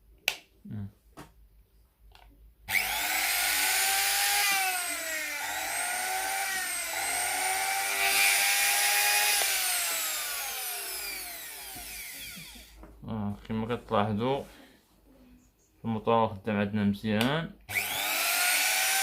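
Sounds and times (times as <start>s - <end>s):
blender motor whining: 2.7s - 12.8s, 17.7s - 19.0s.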